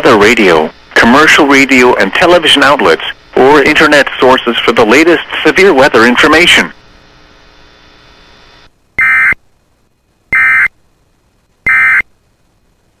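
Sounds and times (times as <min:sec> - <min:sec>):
faint radio hiss: 0:00.0 - 0:13.0
digital data tone bursts: 0:09.0 - 0:09.4, 0:10.3 - 0:10.7, 0:11.6 - 0:12.1.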